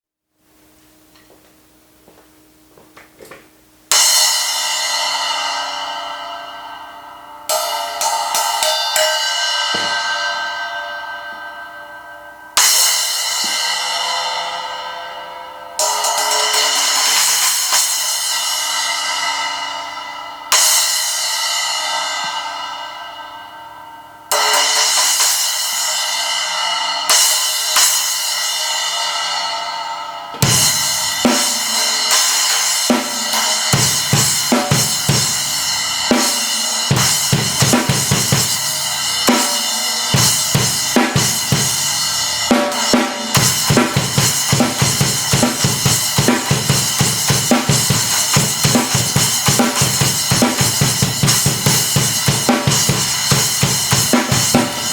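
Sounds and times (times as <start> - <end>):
splash cymbal ringing: 3.9 - 54.9
drum kit playing a beat: 7.5 - 10.5, 12.6 - 14.4, 15.8 - 19.5, 24.3 - 29.4, 30.2 - 54.9.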